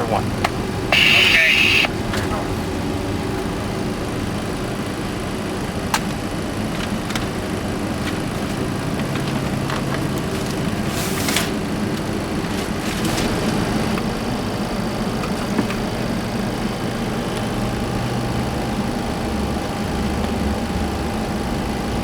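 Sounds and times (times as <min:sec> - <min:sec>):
jet engine and air rumble: 0:00.0 - 0:12.3.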